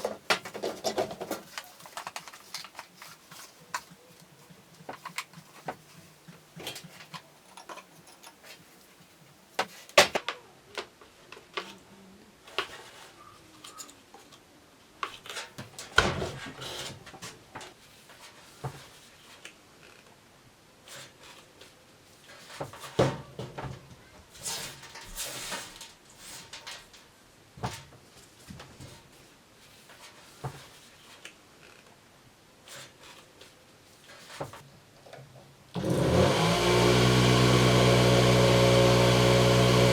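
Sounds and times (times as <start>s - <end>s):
clicks and knocks of small parts: 0.0s - 4.0s.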